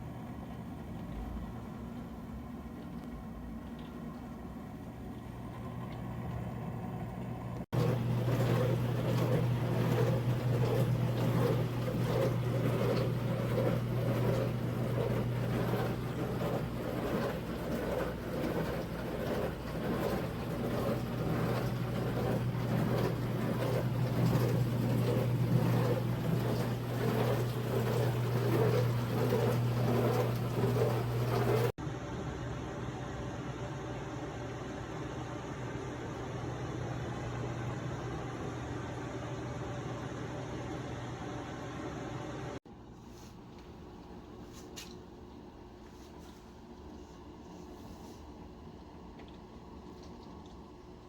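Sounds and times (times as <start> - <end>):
dishwasher motor hum: 0.0 - 51.0
water churning: 2.7 - 31.8.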